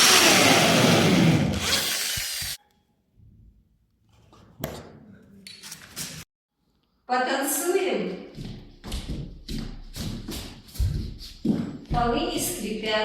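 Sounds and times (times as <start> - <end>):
electric drill boring into wood: 0.0 - 2.6.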